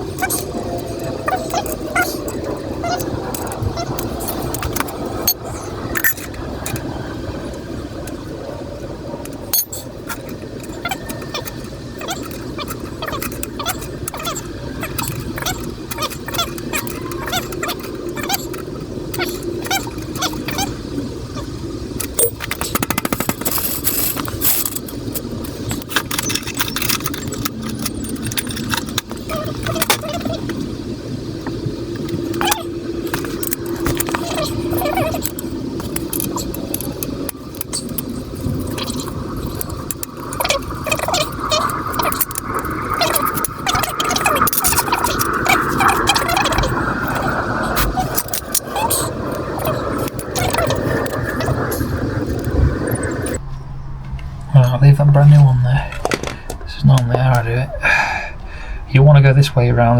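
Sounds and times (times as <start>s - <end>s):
low background rumble: 0.0s - 59.9s
metal tools and chain clinking: 0.2s - 6.8s, 9.2s - 20.7s, 22.0s - 30.5s
quick clicks: 21.4s - 30.7s.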